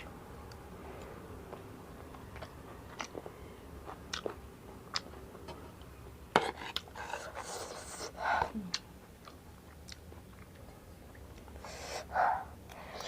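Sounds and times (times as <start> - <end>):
person chewing crunchy food: 2.4 - 5.1.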